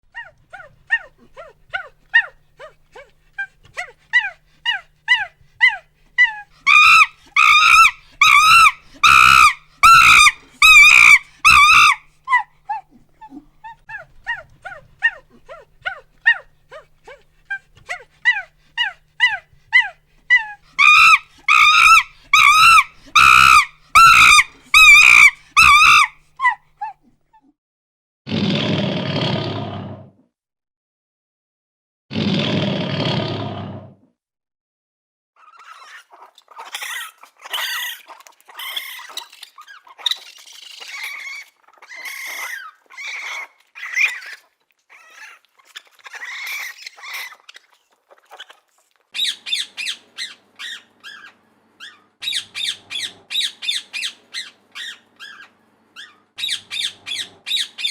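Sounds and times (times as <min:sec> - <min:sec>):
animal short falling calls: 0:06.7 - 0:12.4, 0:20.8 - 0:26.6.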